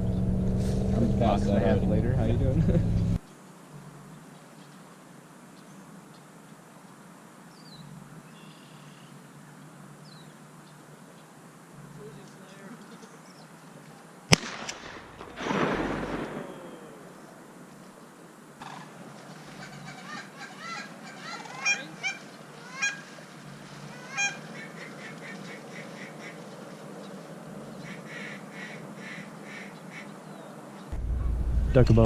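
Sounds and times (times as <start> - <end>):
goose honking: 18.6 - 26.5, 27.7 - 30.1.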